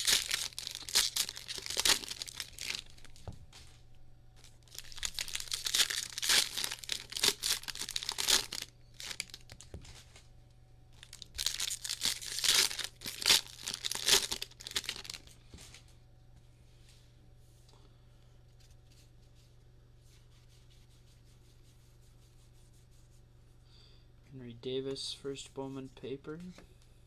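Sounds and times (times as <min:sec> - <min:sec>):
foil wrappers tearing and crinkling: 0:00.0 - 0:03.3, 0:04.4 - 0:10.0, 0:11.0 - 0:15.4.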